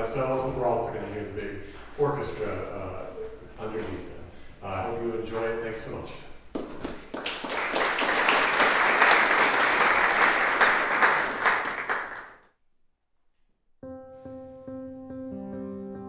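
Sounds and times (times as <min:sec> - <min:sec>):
audience applauding: 0:06.6 - 0:12.4.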